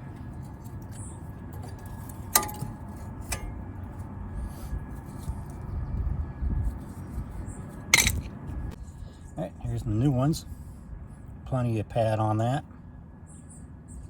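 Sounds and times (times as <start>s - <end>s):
low rumbling handling noise: 0.0s - 8.8s.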